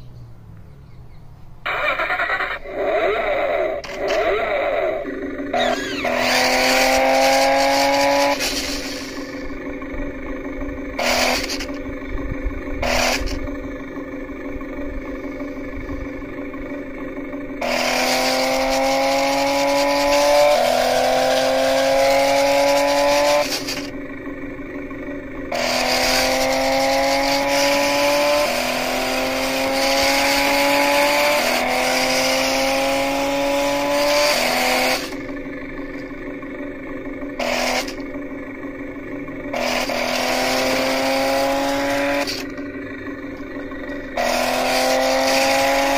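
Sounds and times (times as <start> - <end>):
toy car electric motors whining: 1.7 - 6.5, 11.0 - 11.8, 12.8 - 13.5.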